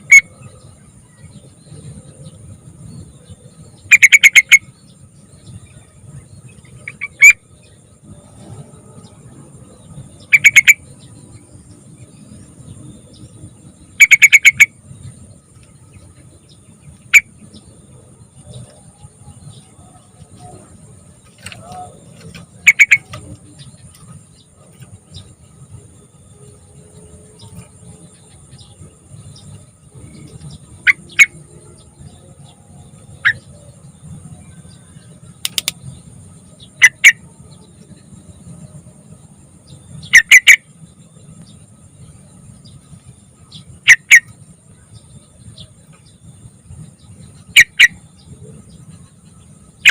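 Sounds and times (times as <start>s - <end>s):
bird chattering calls: 0.0s - 0.6s, 3.8s - 5.0s, 6.5s - 7.6s, 10.1s - 11.2s, 13.9s - 17.8s, 18.4s - 25.4s, 27.4s - 32.2s, 33.1s - 33.6s, 34.8s - 36.0s, 36.6s - 37.6s, 40.0s - 40.8s, 43.4s - 44.4s, 47.0s - 49.9s
low background rumble: 0.0s - 49.9s.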